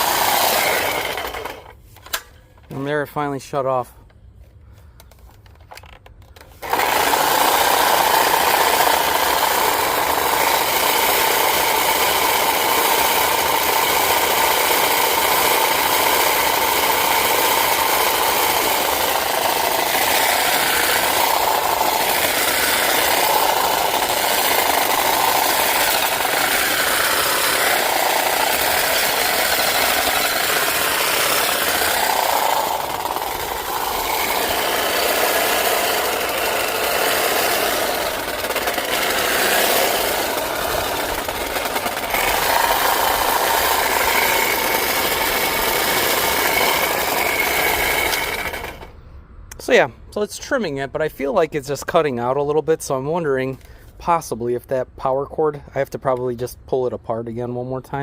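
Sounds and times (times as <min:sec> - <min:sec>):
electric hedge trimmer running: 0:00.0 - 0:02.3, 0:06.4 - 0:49.0.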